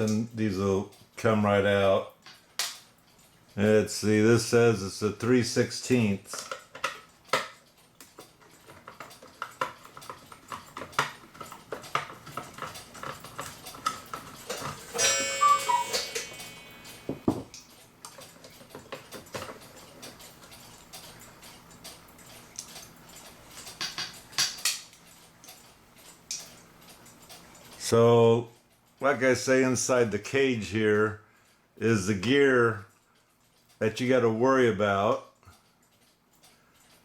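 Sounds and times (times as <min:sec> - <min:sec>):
small metal clicks and taps: 0:01.8 - 0:03.4, 0:05.2 - 0:14.8, 0:17.2 - 0:27.8.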